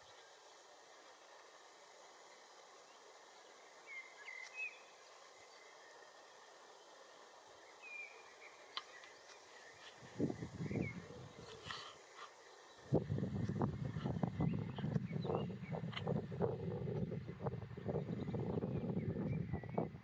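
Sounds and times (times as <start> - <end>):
faint steady hiss: 0.0 - 20.0.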